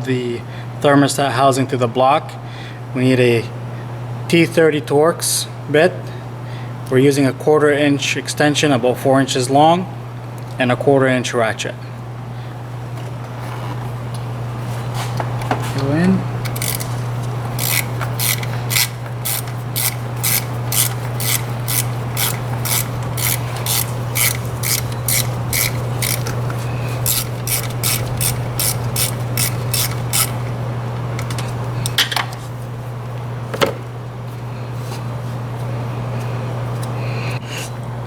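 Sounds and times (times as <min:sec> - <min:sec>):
steady low hum: 0:00.0 - 0:38.0
ratchet clicking: 0:16.4 - 0:30.6.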